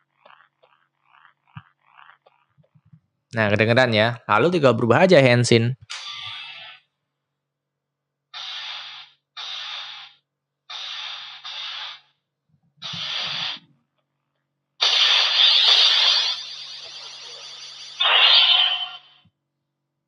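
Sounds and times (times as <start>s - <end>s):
short noisy electronic bursts: 8.4s - 12.2s, 12.8s - 13.6s, 14.8s - 19.2s
sustained transformation sound effect: 18.0s - 19.2s.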